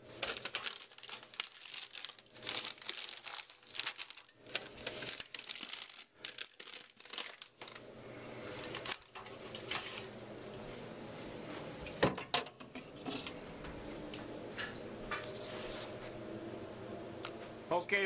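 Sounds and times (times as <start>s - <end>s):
packaging crinkling: 0.0s - 7.9s, 8.5s - 9.8s.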